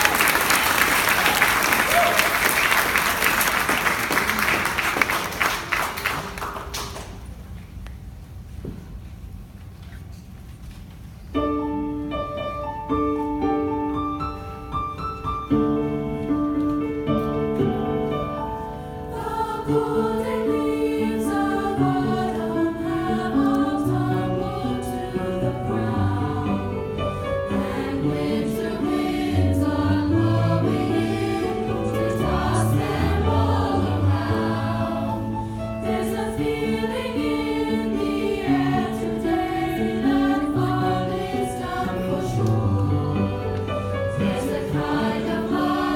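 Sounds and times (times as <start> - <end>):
choir singing in parts: 18.8 - 45.9.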